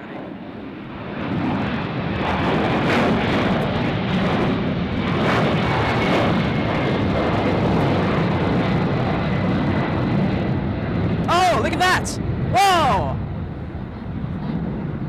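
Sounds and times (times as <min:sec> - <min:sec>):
jet engines roaring: 0:00.0 - 0:15.0.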